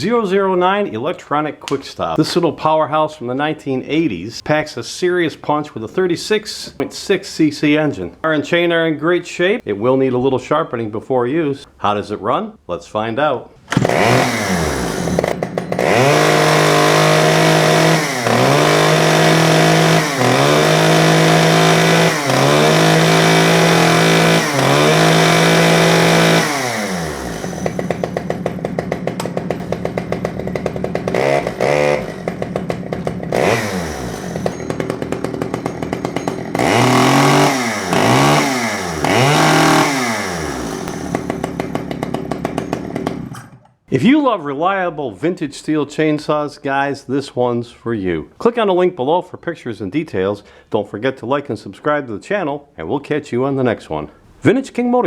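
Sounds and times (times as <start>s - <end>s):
chainsaw engine revving and idling: 13.7s - 43.6s.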